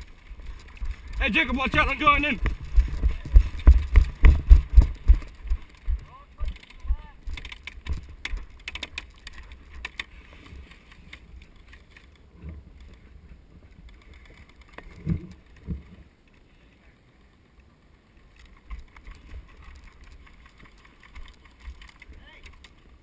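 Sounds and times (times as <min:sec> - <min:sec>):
wind buffeting microphone: 0:00.0 - 0:08.2
heavy low thumps: 0:02.4 - 0:06.1
rustling and knocking: 0:02.4 - 0:10.0.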